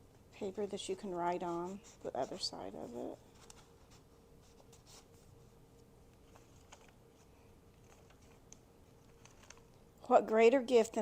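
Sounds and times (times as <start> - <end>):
faint steady hum: 0.0 - 11.0
paper pages rustling: 1.6 - 9.7.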